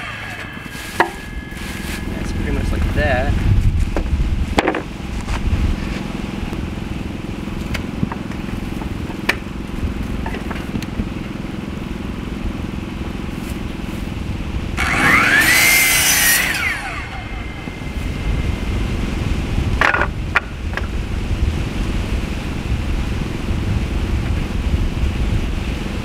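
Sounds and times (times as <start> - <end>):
power tool motor whining: 0.0 - 2.8, 14.8 - 20.0
steady low rumble: 0.0 - 15.0, 15.8 - 26.0.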